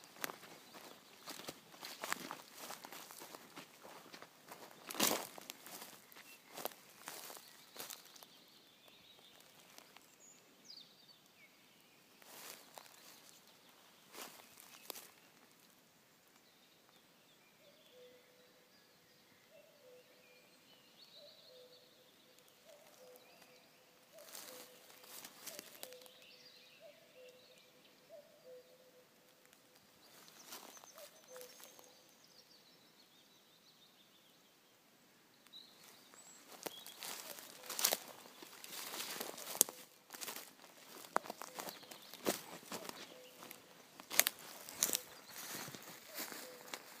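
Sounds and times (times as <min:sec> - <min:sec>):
small birds singing: 0:00.0 - 0:47.0
cuckoo calling: 0:17.7 - 0:18.5, 0:19.5 - 0:20.4, 0:21.2 - 0:32.1, 0:36.1 - 0:47.0
rustles in leaf litter: 0:24.2 - 0:26.0, 0:36.5 - 0:47.0.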